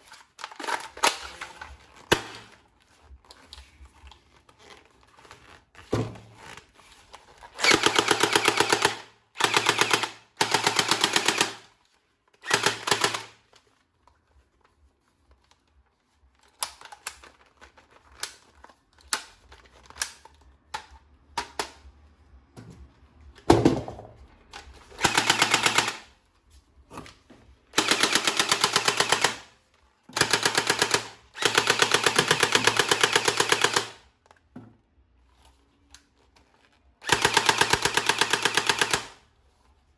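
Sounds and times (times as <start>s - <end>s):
toy gun rapid clicking bursts: 7.6s - 11.7s, 12.4s - 13.4s, 25.0s - 26.1s, 27.8s - 29.5s, 30.2s - 34.0s, 37.0s - 39.2s.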